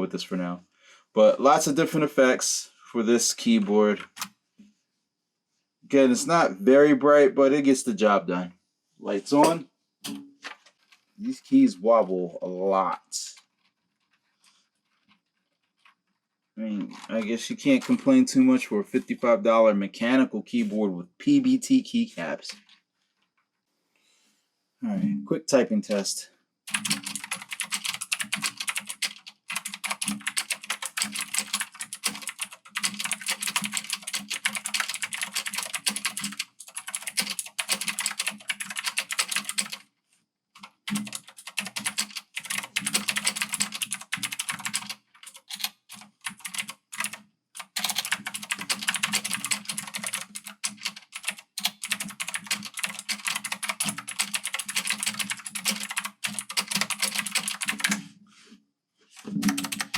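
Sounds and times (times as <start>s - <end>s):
mechanical keyboard typing: 26.7s - 39.8s, 40.6s - 58.0s, 59.3s - 59.9s.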